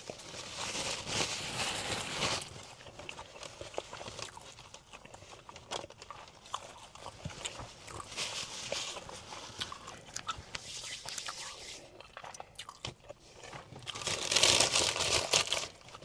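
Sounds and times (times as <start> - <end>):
person chewing: 2.6 - 14.2.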